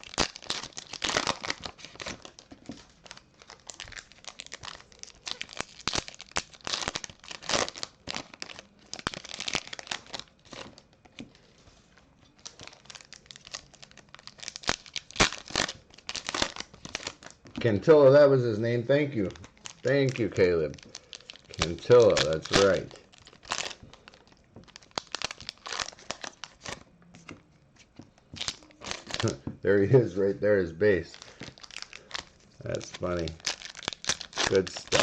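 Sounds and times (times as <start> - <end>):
foil wrappers tearing and crinkling: 0.0 - 10.9, 12.4 - 17.7, 18.5 - 26.8, 28.4 - 30.0, 30.9 - 35.0
cards being handled: 21.6 - 22.9, 34.3 - 35.0.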